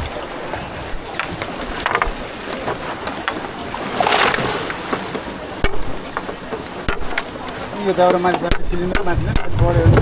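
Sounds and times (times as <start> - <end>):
river water rushing: 0.0 - 8.8
sharp knocks: 5.6 - 7.4, 8.1 - 10.0.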